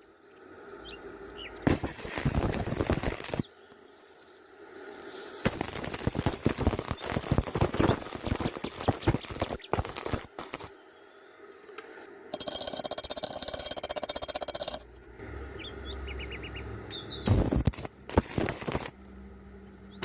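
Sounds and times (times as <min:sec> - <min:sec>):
rapid bird chirping: 0:00.7 - 0:14.8, 0:15.5 - 0:17.5
welding arc crackling: 0:01.6 - 0:03.5, 0:04.9 - 0:10.8, 0:17.2 - 0:19.0.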